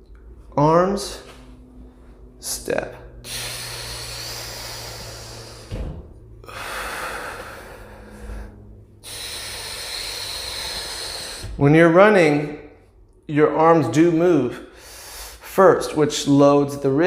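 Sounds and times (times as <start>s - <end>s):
person breathing heavily: 3.0s - 11.6s, 14.6s - 15.5s
low thump: 5.5s - 6.2s.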